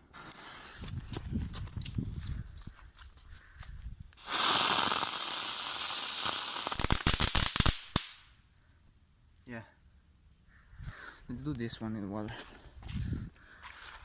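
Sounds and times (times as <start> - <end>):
firework hissing: 0.0 - 0.9, 4.2 - 8.3
firework cracks: 4.2 - 8.4.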